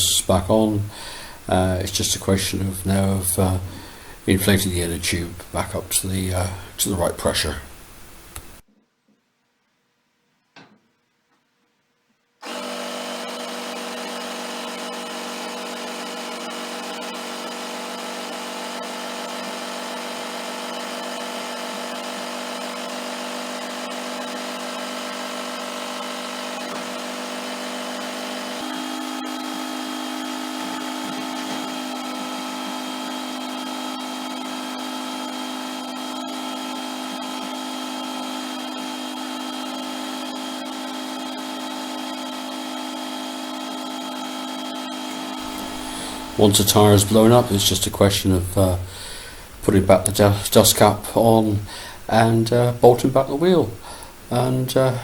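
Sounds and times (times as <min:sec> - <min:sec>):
electric tyre inflator running: 0:00.9 - 0:01.6, 0:03.3 - 0:04.2, 0:12.4 - 0:48.0.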